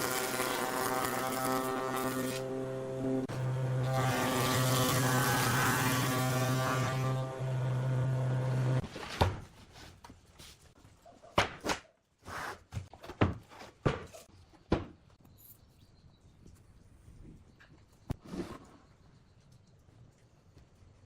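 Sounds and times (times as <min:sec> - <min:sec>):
power tool motor stopping: 0:00.0 - 0:08.8.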